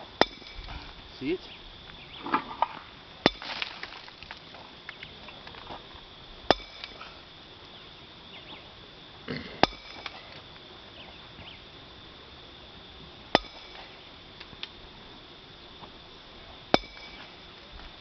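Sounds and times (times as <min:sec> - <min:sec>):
hammer striking stone: 0:00.2 - 0:00.7, 0:03.3 - 0:04.0, 0:06.5 - 0:07.0, 0:09.6 - 0:10.2, 0:13.4 - 0:13.8, 0:16.8 - 0:17.3.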